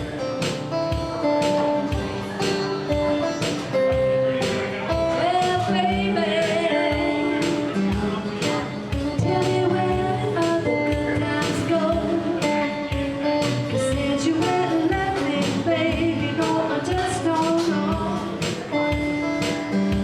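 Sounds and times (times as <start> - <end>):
guitar strumming: 0.0 - 20.0
person singing: 4.8 - 18.6.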